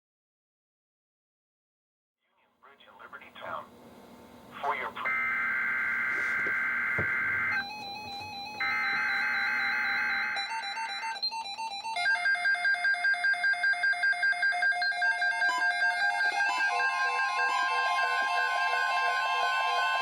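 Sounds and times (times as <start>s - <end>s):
buzzing digital data tones: 5.0s - 7.7s
rapid electronic alarm beeping: 5.0s - 20.0s.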